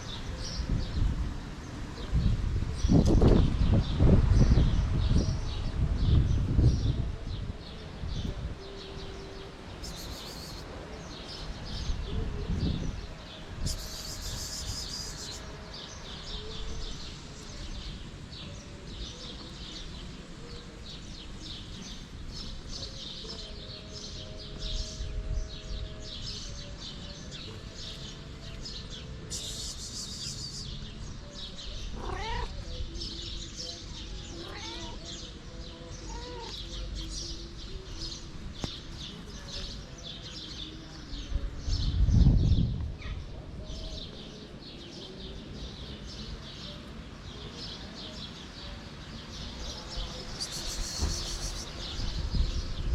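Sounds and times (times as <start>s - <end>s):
wind rumble on microphone: 0.0s - 10.5s, 11.1s - 19.8s, 20.4s - 33.8s, 36.5s - 46.4s, 49.7s - 52.9s
background chirping: 8.7s - 12.2s, 13.2s - 42.0s, 43.0s - 52.9s
cats meowing: 31.8s - 32.8s, 34.3s - 35.2s, 36.0s - 36.8s.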